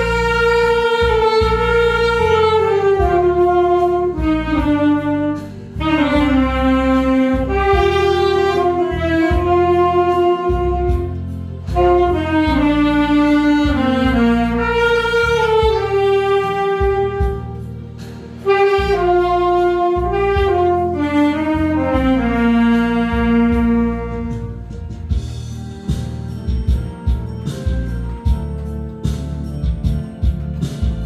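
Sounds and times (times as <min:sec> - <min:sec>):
backing track bass line: 0:00.0 - 0:31.0
saxophone slow melody: 0:00.0 - 0:31.0.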